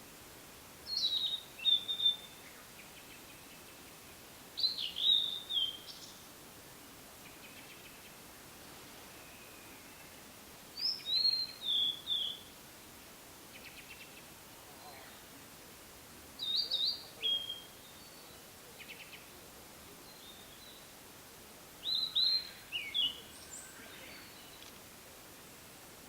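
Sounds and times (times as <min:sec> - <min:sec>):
bird whistled song: 0:00.9 - 0:02.5, 0:04.6 - 0:06.1, 0:10.8 - 0:12.5, 0:16.4 - 0:18.3, 0:21.8 - 0:24.6.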